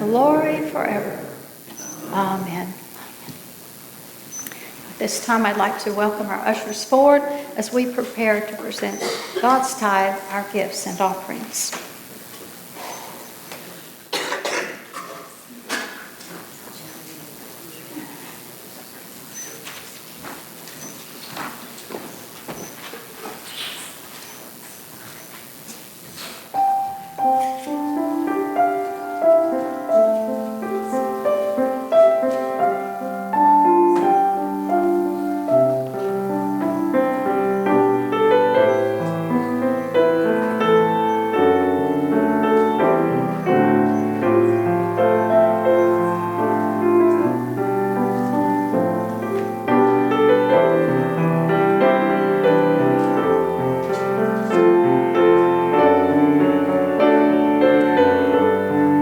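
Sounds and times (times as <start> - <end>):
solo piano music: 0.0 - 1.6, 26.5 - 59.0.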